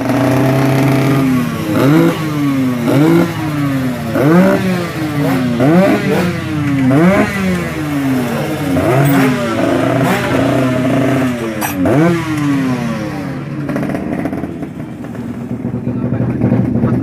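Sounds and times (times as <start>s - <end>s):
motorcycle engines revving hard: 0.0s - 17.0s.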